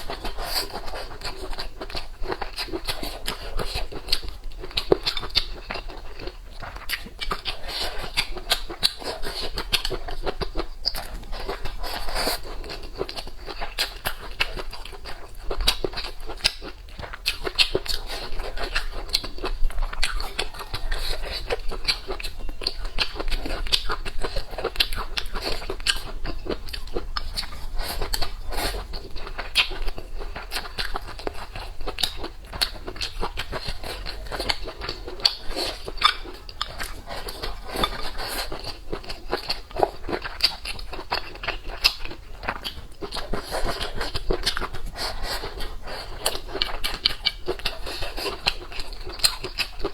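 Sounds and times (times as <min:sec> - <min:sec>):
biting crunches: 0:00.0 - 0:49.9
wet chewing: 0:00.0 - 0:49.9.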